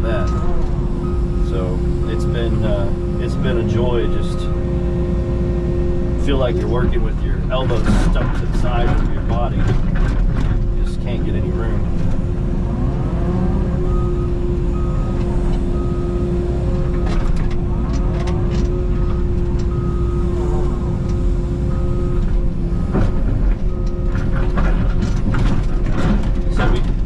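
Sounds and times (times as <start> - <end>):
backup alarm beeping: 0.0 - 6.6, 13.4 - 25.1
excavator engine and hydraulics whine: 0.0 - 27.0
digging knocks and scrapes: 6.4 - 11.8.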